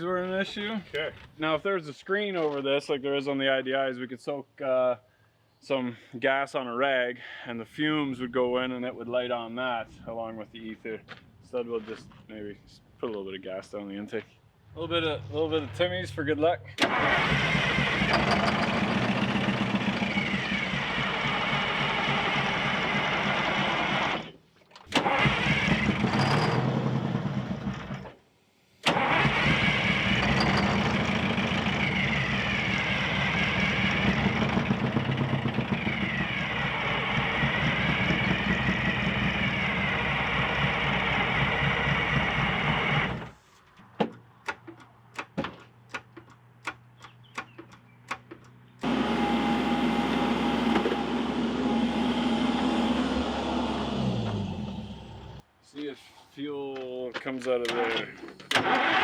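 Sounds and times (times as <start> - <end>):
diesel engine cranking on starter: 16.7 - 28.2, 28.8 - 43.4, 48.8 - 55.4, 57.7 - 59.0
sharp clicks: 44.1 - 48.6.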